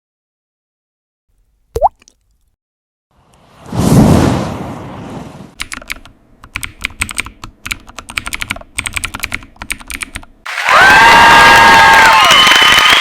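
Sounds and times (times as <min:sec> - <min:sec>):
computer keyboard typing: 0:05.6 - 0:10.4.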